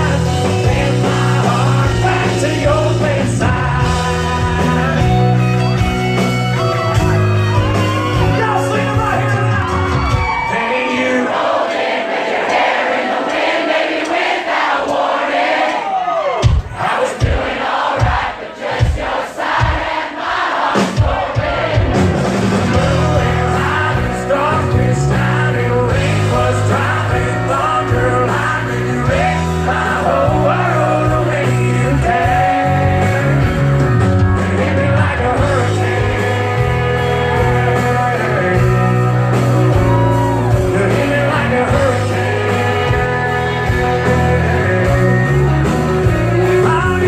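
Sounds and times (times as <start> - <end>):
bass guitar: 0.0 - 10.6, 21.7 - 47.0
country band playing: 0.0 - 47.0
crowd noise: 0.0 - 47.0
drum hits: 16.4 - 24.9
person singing: 34.6 - 47.0.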